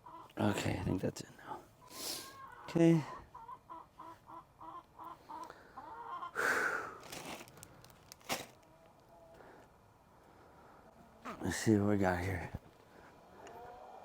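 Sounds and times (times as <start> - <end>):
chickens clucking: 0.0 - 0.4, 1.5 - 6.4, 13.1 - 14.0.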